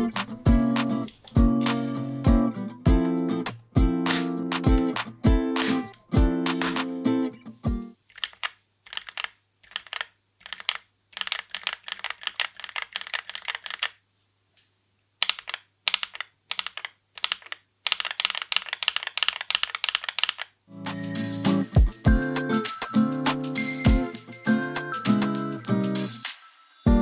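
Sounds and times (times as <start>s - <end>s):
music: 0.0s - 8.0s, 20.7s - 27.0s
mechanical keyboard typing: 8.1s - 14.0s, 15.2s - 20.6s.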